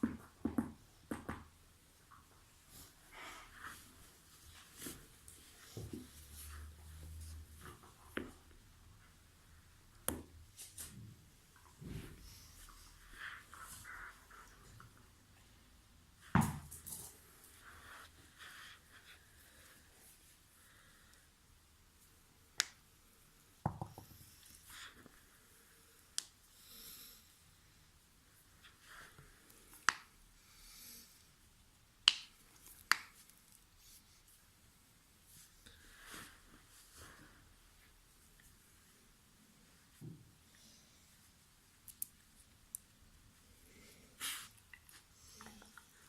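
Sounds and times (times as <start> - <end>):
rustling of skin and clothing: 2.6 - 8.5.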